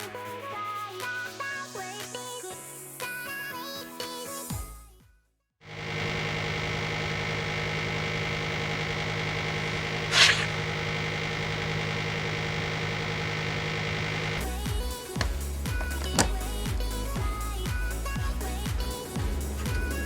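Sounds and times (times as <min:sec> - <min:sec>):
air conditioner hum with whining: 0:06.0 - 0:20.0
short burst of hissing: 0:10.1 - 0:10.5.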